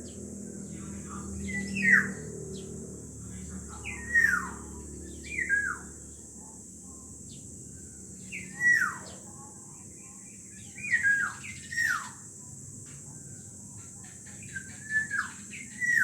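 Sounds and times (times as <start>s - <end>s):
bird calling with slurred notes: 3.7s - 5.9s, 7.3s - 9.3s, 10.1s - 12.3s, 14.0s - 16.0s.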